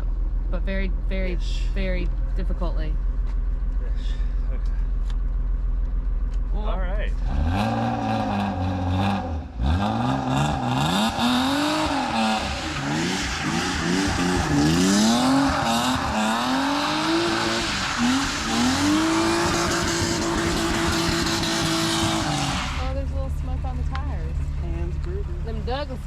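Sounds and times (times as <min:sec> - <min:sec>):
car engine revving: 0:03.8 - 0:26.0
tires squealing: 0:07.1 - 0:23.0.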